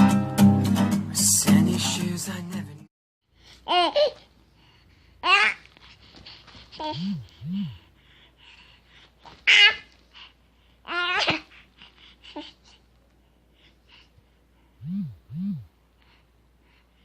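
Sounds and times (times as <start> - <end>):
baby humming: 6.7 - 7.9
baby squealing: 9.5 - 9.9, 10.9 - 11.5.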